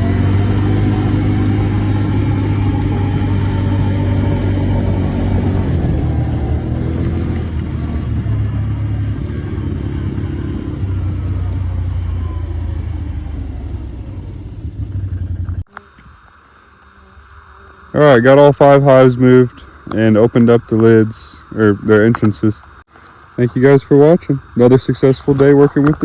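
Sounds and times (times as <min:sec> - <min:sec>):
vehicle engine running at low revs: 0:00.0 - 0:15.9.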